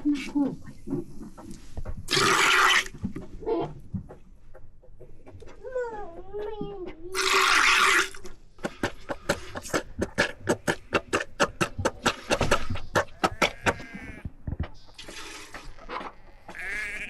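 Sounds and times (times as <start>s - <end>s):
sheep bleating: 13.2s - 14.2s, 16.2s - 17.0s
milk squirting into a pail: 15.0s - 15.8s.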